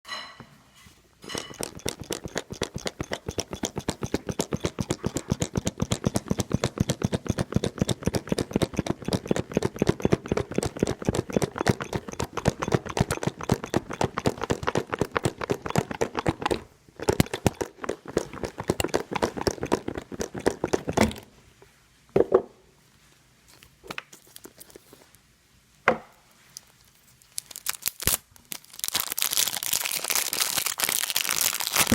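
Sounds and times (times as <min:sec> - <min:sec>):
packaging crinkling: 0:23.6 - 0:25.1, 0:26.5 - 0:31.9
packaging tearing and crackling: 0:26.6 - 0:31.9.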